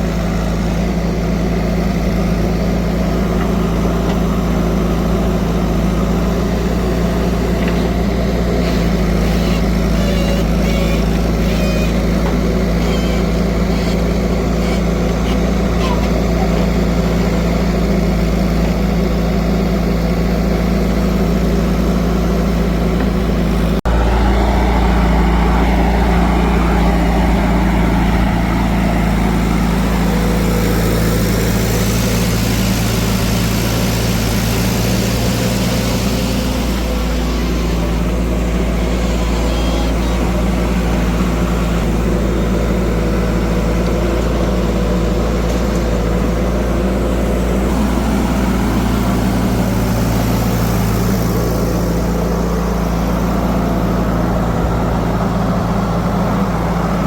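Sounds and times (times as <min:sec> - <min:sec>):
heavy machinery engine drone: 0:00.0 - 0:57.0.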